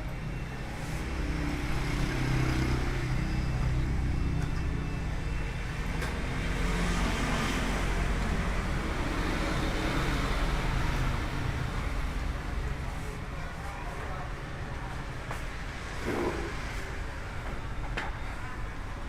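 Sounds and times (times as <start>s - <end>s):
road traffic rumble: 0.0s - 19.0s.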